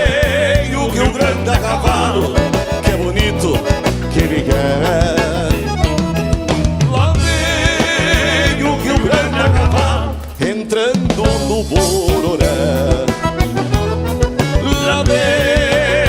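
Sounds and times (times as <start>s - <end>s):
band playing: 0.0s - 16.0s
drum kit beat: 0.0s - 16.0s
wavering melodic lead: 0.1s - 10.2s.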